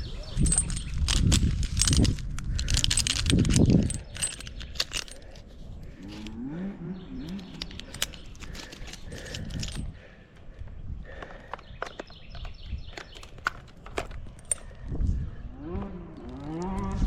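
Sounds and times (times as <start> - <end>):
climbing hardware clinking: 0.0 - 6.4, 7.2 - 14.8.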